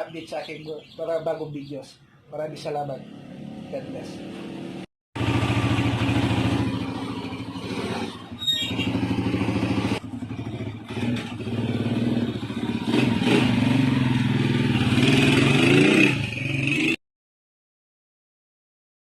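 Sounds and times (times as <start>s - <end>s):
motorcycle engine revving: 3.0s - 17.0s.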